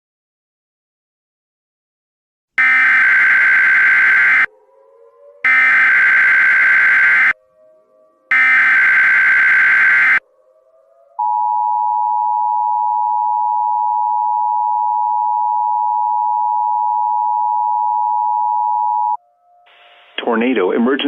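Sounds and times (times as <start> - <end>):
harsh digital data screech: 2.6 - 4.5, 5.5 - 7.4, 8.4 - 10.2
two-tone alarm: 2.6 - 4.5, 5.4 - 7.4, 8.3 - 10.2, 11.2 - 20.2.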